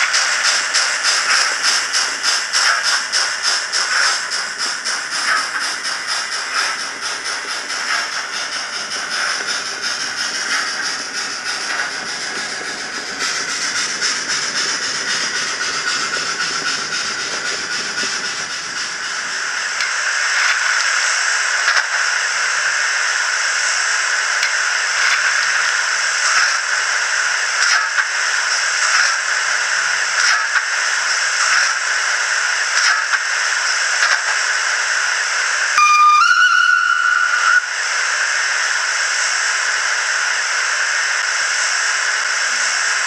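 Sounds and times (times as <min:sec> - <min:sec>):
steam hiss from small speaker: 0:00.0 - 0:43.0
steam whistle: 0:35.8 - 0:37.8.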